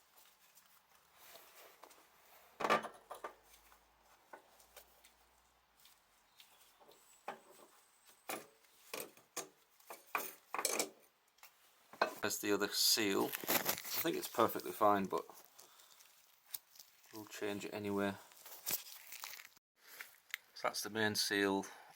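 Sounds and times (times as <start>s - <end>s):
metal tools and parts clinking: 8.2s - 11.0s.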